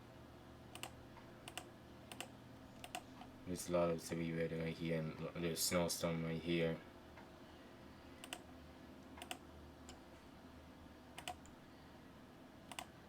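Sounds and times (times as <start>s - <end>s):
low steady hum: 0.0s - 13.0s
faint computer clicks: 0.7s - 3.3s, 8.2s - 10.0s, 11.2s - 11.6s, 12.7s - 12.9s.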